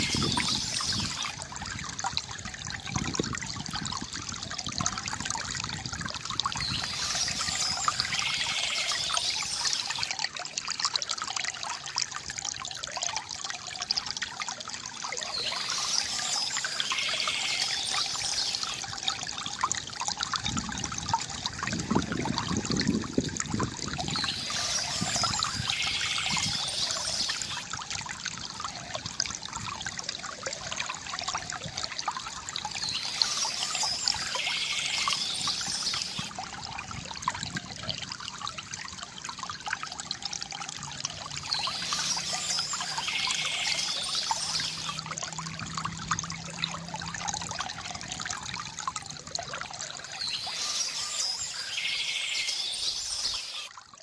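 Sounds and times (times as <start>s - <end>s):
water trickling from fountain: 0.0s - 54.0s.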